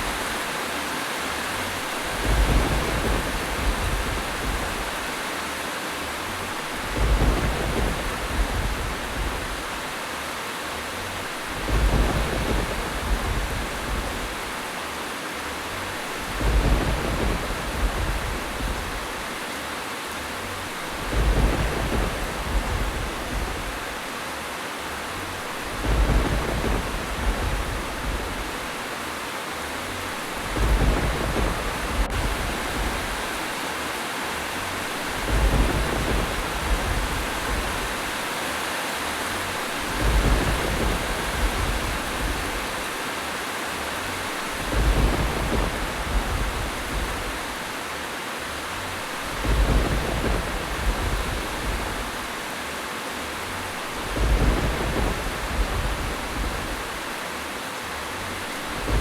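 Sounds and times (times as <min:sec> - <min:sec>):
steady rain hissing: 0:00.0 - 0:59.0
low rumble: 0:02.0 - 0:05.1, 0:06.7 - 0:09.9, 0:11.2 - 0:14.6, 0:16.2 - 0:19.4, 0:20.7 - 0:24.1, 0:25.2 - 0:28.8, 0:29.9 - 0:33.5, 0:34.5 - 0:38.2, 0:39.5 - 0:42.8, 0:44.4 - 0:47.7, 0:48.9 - 0:52.4, 0:53.5 - 0:57.2, 0:58.4 - 0:59.0.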